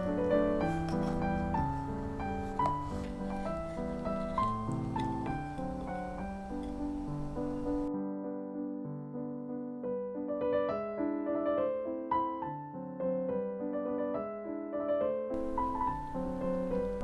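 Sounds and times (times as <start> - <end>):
faint hiss: 0.0 - 7.9, 15.4 - 17.0
gentle piano melody: 0.0 - 17.0.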